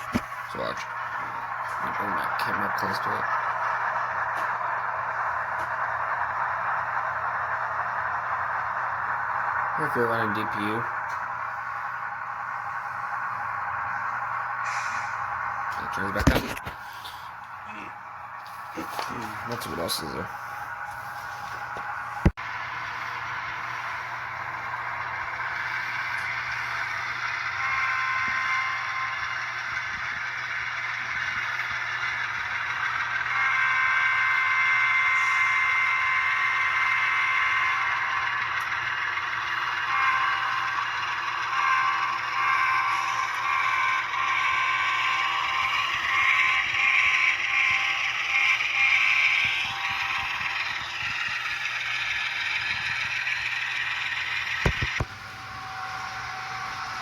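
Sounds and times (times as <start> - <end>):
model locomotive sound through speaker: 0.0 - 57.0.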